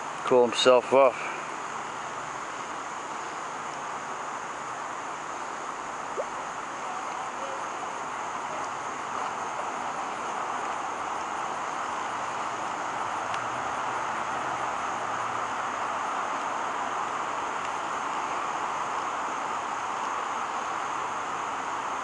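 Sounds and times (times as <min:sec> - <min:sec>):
high insect drone: 0:00.0 - 0:22.0.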